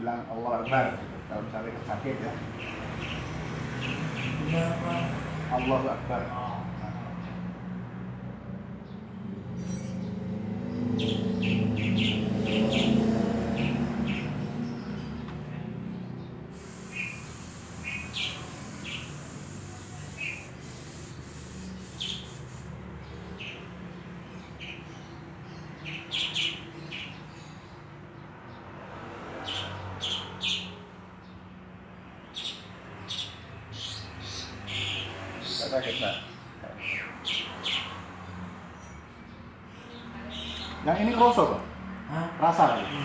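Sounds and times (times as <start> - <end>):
small birds chirping: 0.4 - 7.4, 8.7 - 31.5, 32.2 - 43.0
steady hiss: 16.6 - 22.7.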